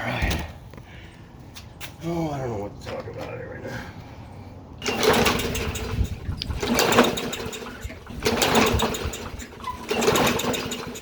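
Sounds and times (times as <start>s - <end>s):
recoil starter pulls: 4.8s - 11.0s
small engine rattling over: 4.8s - 11.0s.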